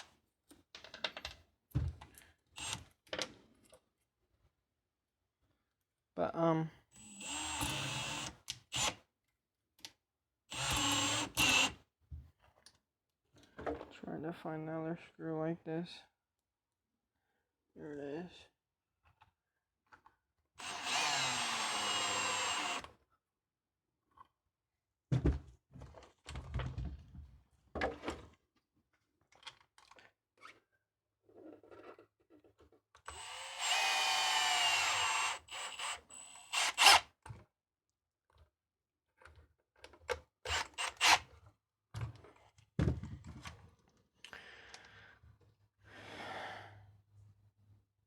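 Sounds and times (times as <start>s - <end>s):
cordless drill driving screws: 2.6s - 2.8s, 7.0s - 9.0s, 10.5s - 11.8s, 20.6s - 22.9s, 33.1s - 37.0s, 40.4s - 41.3s
hard objects thunking set down: 42.8s - 43.6s.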